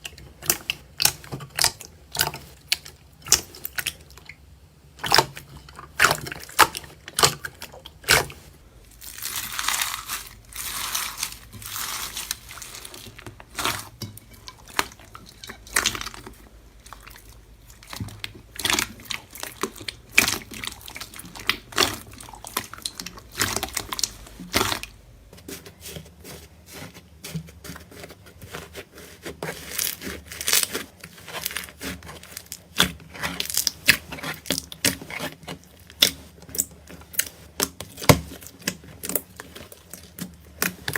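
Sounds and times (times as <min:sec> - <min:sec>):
crinkly rustle: 0:08.4 - 0:16.4
slime crackling and popping: 0:08.9 - 0:24.9.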